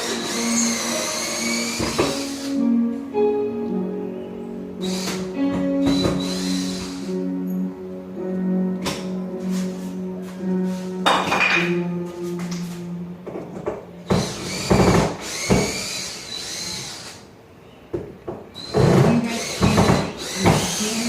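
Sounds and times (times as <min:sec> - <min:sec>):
power drill whining: 0:00.0 - 0:02.6, 0:04.8 - 0:07.2, 0:14.0 - 0:17.3, 0:18.6 - 0:21.0
music: 0:00.0 - 0:15.7, 0:18.8 - 0:21.0.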